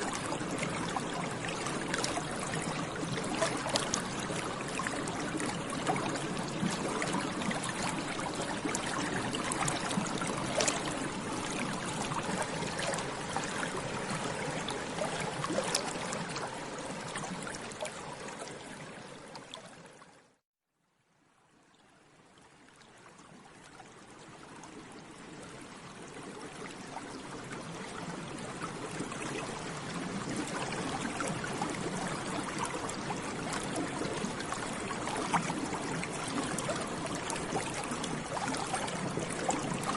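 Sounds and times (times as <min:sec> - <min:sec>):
water bubbling: 0:00.0 - 0:19.8, 0:27.1 - 0:39.9.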